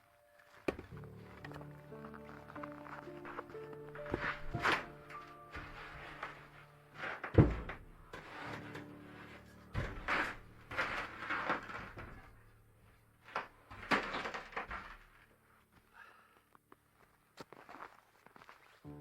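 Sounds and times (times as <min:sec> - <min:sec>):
knocks and thumps: 0:07.2 - 0:08.9, 0:09.7 - 0:12.3.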